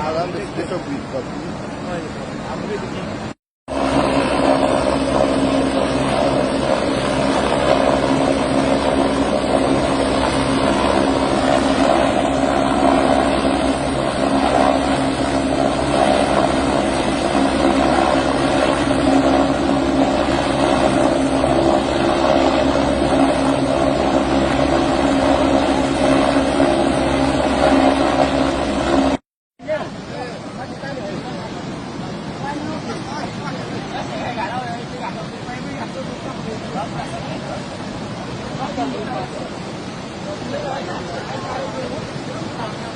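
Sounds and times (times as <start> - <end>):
helicopter rotor and engine drone: 0.0 - 42.9.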